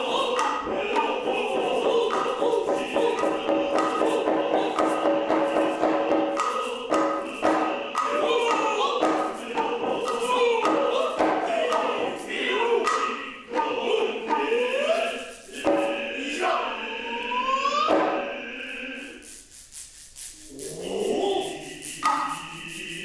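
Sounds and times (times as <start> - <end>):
hand drum strokes: 0.0 - 16.2, 19.0 - 23.0
drummers' rising calls: 0.0 - 17.0
chanting voices: 0.0 - 19.5, 20.4 - 23.0.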